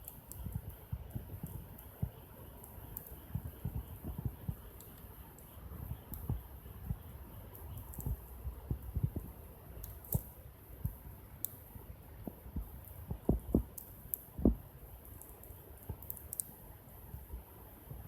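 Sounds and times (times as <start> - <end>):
wood campfire crackling: 0.0 - 18.0.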